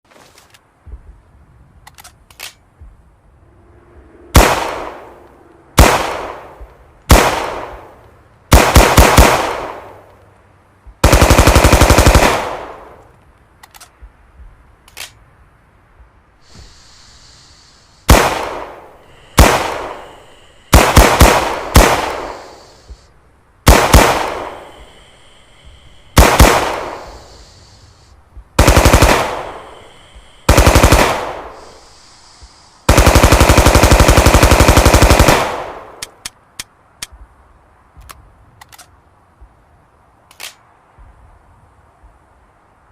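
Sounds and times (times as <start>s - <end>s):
submachine gun firing: 4.4s - 5.0s, 5.8s - 6.5s, 7.1s - 7.8s, 8.5s - 10.0s, 11.0s - 13.0s, 18.1s - 20.1s, 20.7s - 22.6s, 23.6s - 24.7s, 26.1s - 27.4s, 28.6s - 29.8s, 30.5s - 31.9s, 32.9s - 36.0s.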